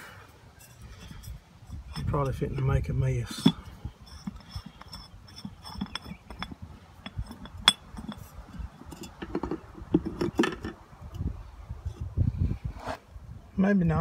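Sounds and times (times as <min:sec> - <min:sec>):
metal parts clinking: 0:03.3 - 0:10.8.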